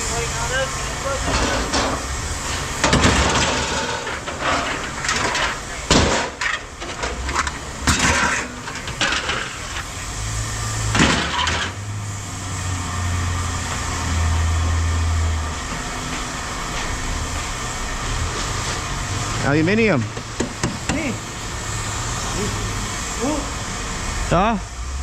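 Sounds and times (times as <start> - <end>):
low engine hum: 0.0 - 25.0
scrap metal clattering: 1.1 - 11.9.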